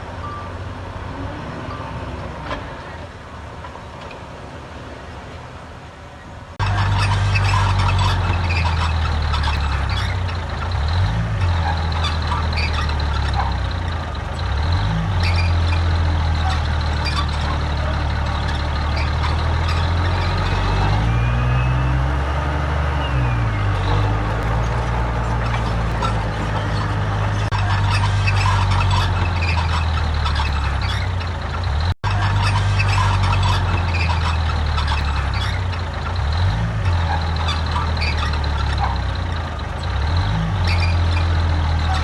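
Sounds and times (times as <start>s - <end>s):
clanking and rattling: 6.6s - 21.0s, 23.7s - 42.0s
heavy diesel engine revving: 6.6s - 42.0s.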